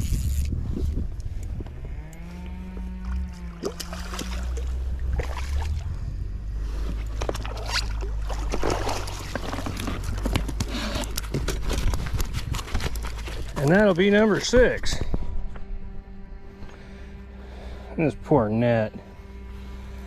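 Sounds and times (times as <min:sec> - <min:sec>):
wind rumble on microphone: 0:00.0 - 0:17.1
water splashes: 0:03.0 - 0:06.0, 0:07.2 - 0:10.4.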